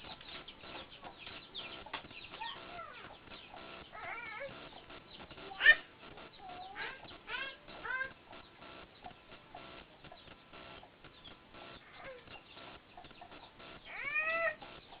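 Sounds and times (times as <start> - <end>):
faint animal calls: 0.0 - 15.0.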